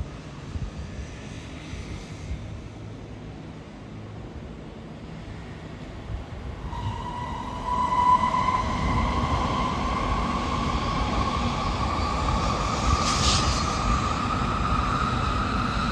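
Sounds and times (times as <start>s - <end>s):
train rumbling on track: 0.0s - 15.9s
brief hiss: 12.8s - 14.0s.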